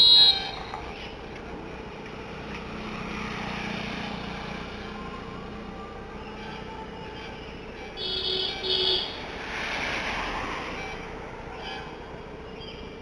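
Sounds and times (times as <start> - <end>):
loud high-pitched tone: 0.0 - 0.9
street traffic noise: 0.0 - 13.0
vehicle passing: 0.0 - 13.0.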